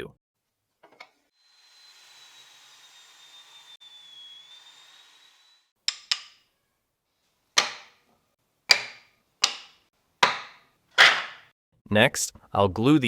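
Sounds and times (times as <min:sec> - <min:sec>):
wooden pieces knocking on hard surface: 0:07.6 - 0:07.9, 0:08.7 - 0:11.4.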